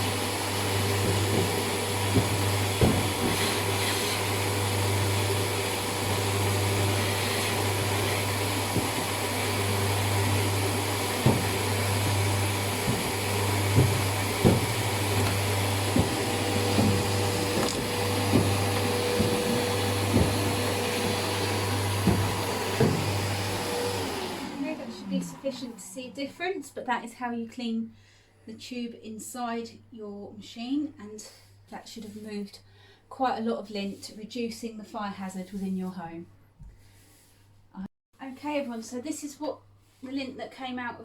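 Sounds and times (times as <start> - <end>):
nozzle knocking and scraping tube: 0.0 - 24.2
vacuum cleaner running: 0.0 - 26.5.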